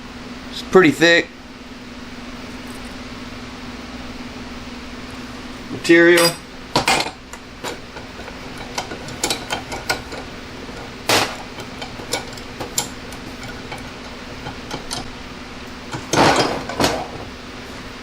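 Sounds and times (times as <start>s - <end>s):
metal clatter: 6.2s - 15.1s, 15.8s - 17.4s
metal knocks and clinks: 6.2s - 15.1s, 15.9s - 17.3s.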